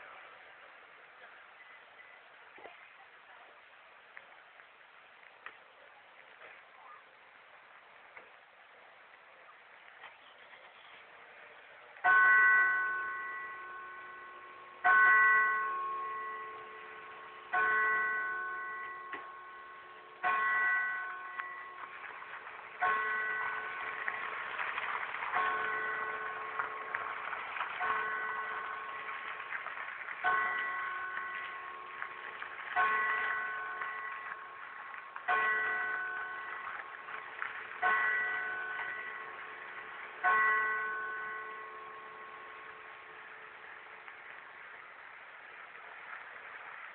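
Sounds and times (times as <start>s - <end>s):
clock tower bell striking: 12.0s - 24.2s, 25.4s - 27.1s, 27.8s - 29.2s, 30.2s - 43.6s.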